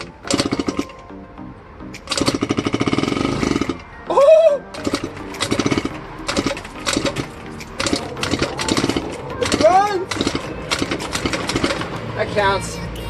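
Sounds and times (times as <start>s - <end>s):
scooter engine sputtering: 0.0s - 1.1s, 2.0s - 12.3s
person whooping: 4.1s - 4.7s.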